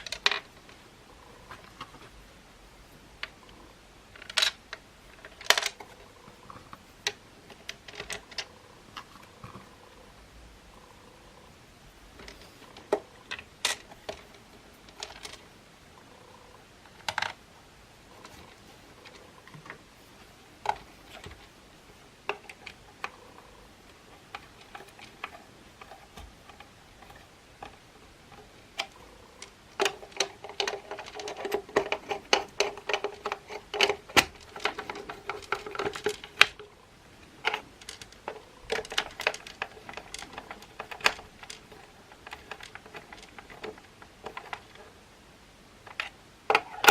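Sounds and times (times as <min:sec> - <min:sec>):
plastic housing parts clicking and rattling: 0:00.0 - 0:00.8, 0:04.1 - 0:09.7, 0:12.2 - 0:15.5, 0:22.2 - 0:45.0, 0:45.8 - 0:46.9.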